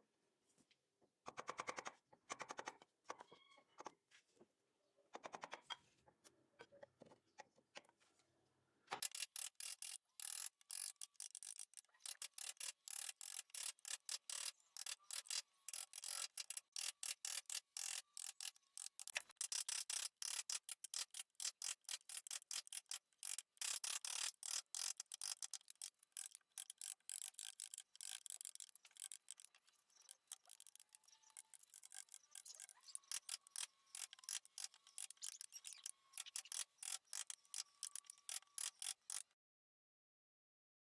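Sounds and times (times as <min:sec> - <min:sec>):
rapid sharp clicking: 0:09.0 - 0:39.3.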